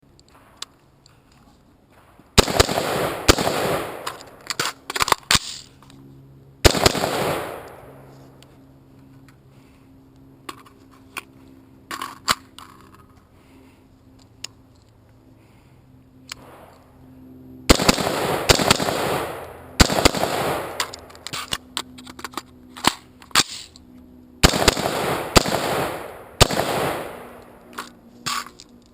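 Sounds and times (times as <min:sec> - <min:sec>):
rifle shots echoing: 0:02.0 - 0:04.6, 0:06.6 - 0:08.1, 0:17.7 - 0:21.3, 0:24.4 - 0:27.7.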